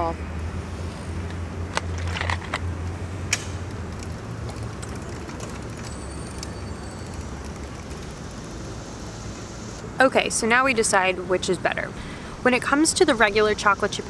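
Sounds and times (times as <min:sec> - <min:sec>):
short clicks and rustles: 0:01.2 - 0:08.1.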